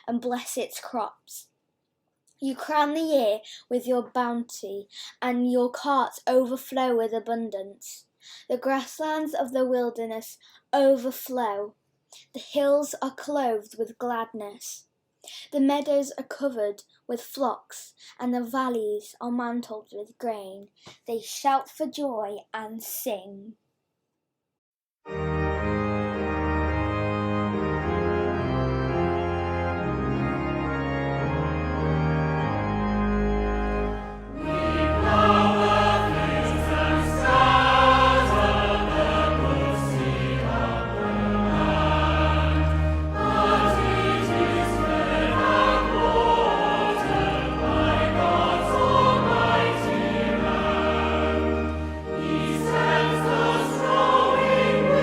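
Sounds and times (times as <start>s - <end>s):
organ playing chords: 25.1s - 55.0s
choir singing a hymn: 33.6s - 55.0s.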